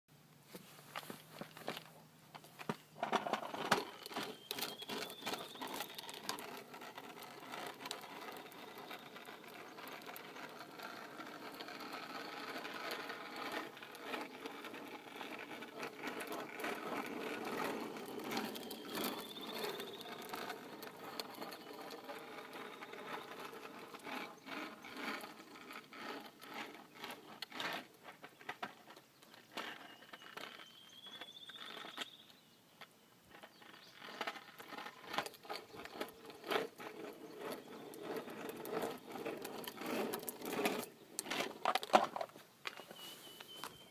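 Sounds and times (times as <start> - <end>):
wheels rolling over pavement: 1.0 - 43.9
bird whistled call: 3.8 - 6.0, 18.6 - 20.2, 29.9 - 32.5, 42.7 - 43.9.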